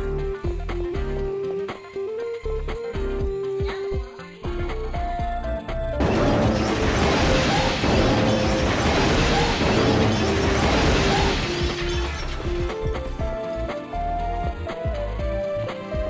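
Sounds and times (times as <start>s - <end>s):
loud crashing hiss: 6.0s - 12.8s.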